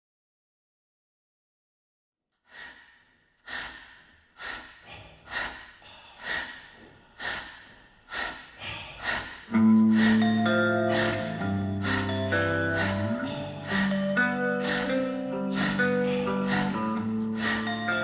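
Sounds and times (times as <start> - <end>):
sustained band chords: 9.5 - 18.0.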